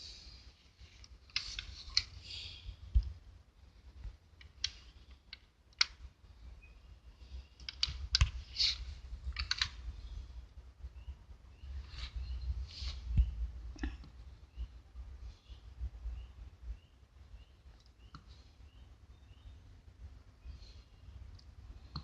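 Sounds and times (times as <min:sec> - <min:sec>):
small clicks and taps: 0:04.0 - 0:06.1, 0:07.5 - 0:08.5, 0:09.3 - 0:09.8, 0:21.3 - 0:22.0.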